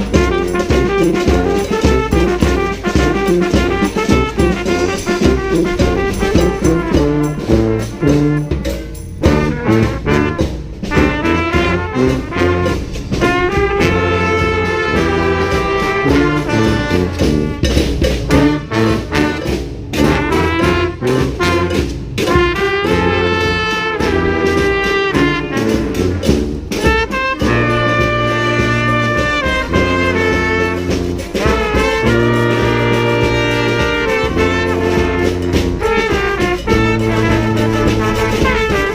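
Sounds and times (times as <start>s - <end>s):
brass band playing: 0.0s - 38.9s
percussion hits: 0.0s - 38.9s
bass line: 3.1s - 21.8s, 27.4s - 38.9s.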